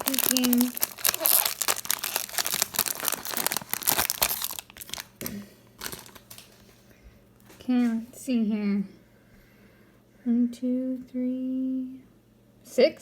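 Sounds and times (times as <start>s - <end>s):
wrapper crinkling as torn open: 0.0s - 6.7s.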